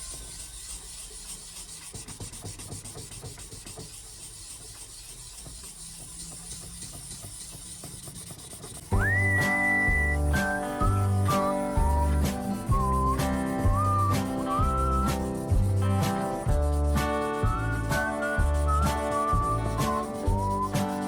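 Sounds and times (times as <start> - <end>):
faint scraping and rubbing: 0.0 - 21.0
music with whistled tune: 8.9 - 21.0.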